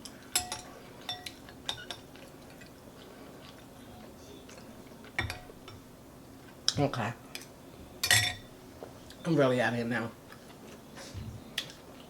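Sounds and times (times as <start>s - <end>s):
spoon clinking on a bowl: 0.3s - 2.1s, 5.2s - 5.8s, 7.4s - 8.5s.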